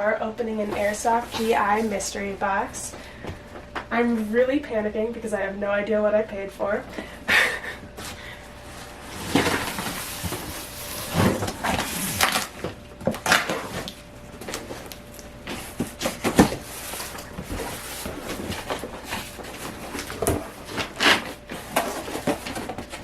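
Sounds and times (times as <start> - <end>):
cardboard box rustling and scraping: 0.6 - 2.0, 8.0 - 23.0.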